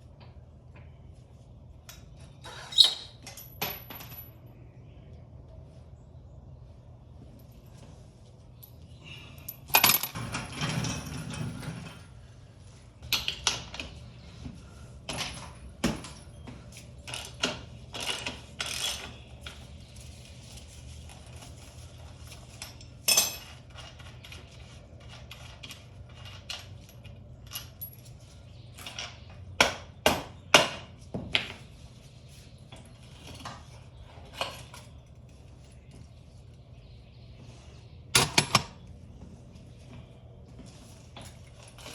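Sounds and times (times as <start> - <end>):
metal tools clinking and clattering: 8.6 - 12.1, 22.3 - 29.2.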